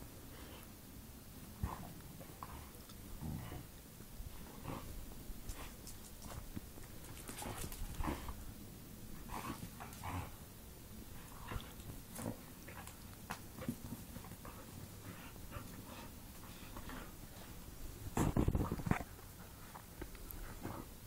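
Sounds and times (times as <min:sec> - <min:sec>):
dogs scuffling: 0:05.4 - 0:08.4.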